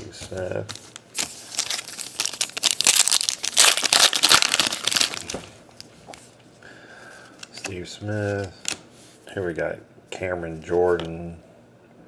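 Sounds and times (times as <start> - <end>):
wrapper crinkling and tearing: 0.4 - 5.9.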